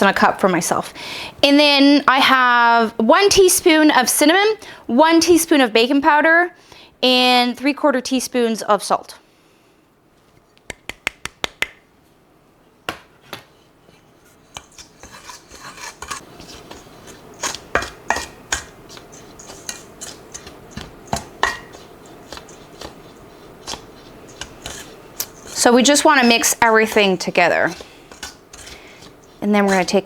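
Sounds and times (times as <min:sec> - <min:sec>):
scraping and rustling in a bowl: 0:13.9 - 0:30.0.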